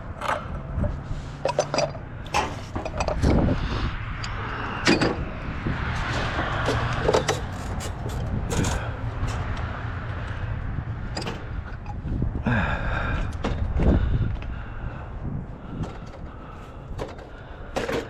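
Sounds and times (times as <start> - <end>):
low engine rumble: 0.0 - 18.0
metallic knocks and clanks: 1.4 - 3.5, 6.0 - 9.6, 11.0 - 12.0.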